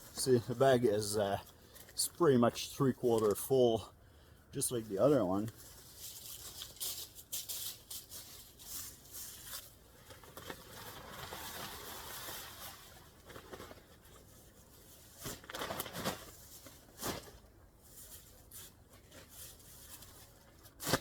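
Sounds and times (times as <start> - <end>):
dry leaves rustling: 5.0 - 21.0.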